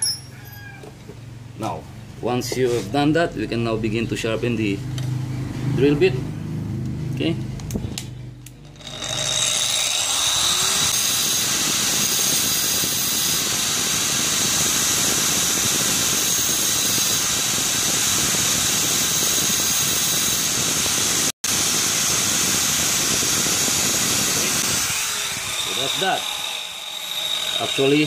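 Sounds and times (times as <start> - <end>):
angle grinder grinding metal: 8.5 - 28.0.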